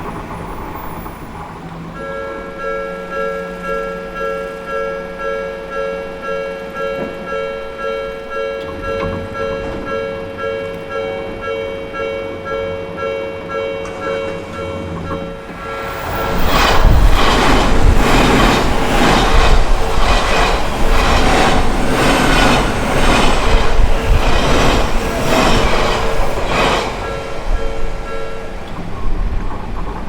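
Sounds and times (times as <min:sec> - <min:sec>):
approaching train: 0:00.0 - 0:30.0
level-crossing warning bell: 0:01.8 - 0:29.9.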